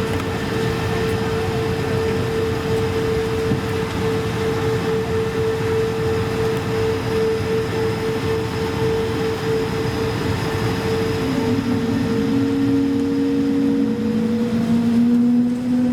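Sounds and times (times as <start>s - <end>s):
aircraft cabin engine hum: 0.0s - 15.9s
low engine tone: 0.0s - 15.9s.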